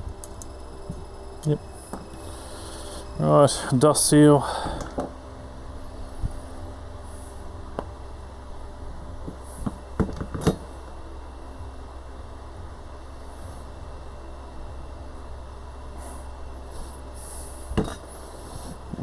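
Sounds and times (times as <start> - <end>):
steady low hum: 0.0 - 19.0
knocks and clicks of metal parts: 9.2 - 10.6.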